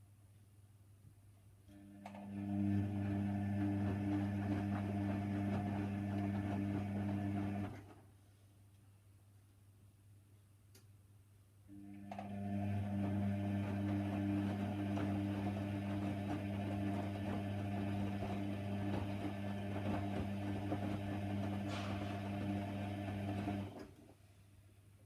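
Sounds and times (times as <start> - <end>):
washer dryer humming: 1.9 - 7.9, 11.8 - 24.0.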